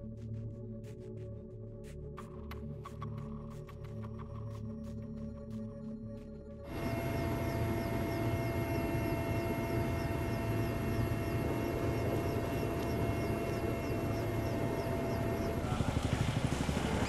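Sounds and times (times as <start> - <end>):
engine running: 6.7 - 17.0.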